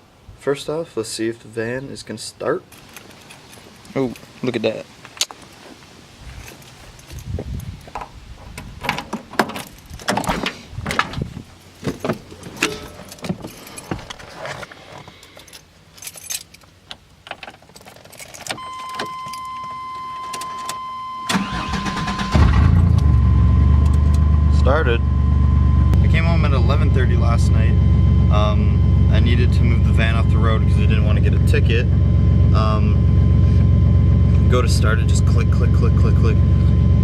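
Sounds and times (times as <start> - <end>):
keys jangling: 6.3 - 8.0, 8.8 - 10.3, 11.6 - 14.3, 15.2 - 16.7, 17.4 - 19.5
van engine cranking and running: 6.7 - 14.6, 21.3 - 37.0
high warning tone: 18.6 - 37.0.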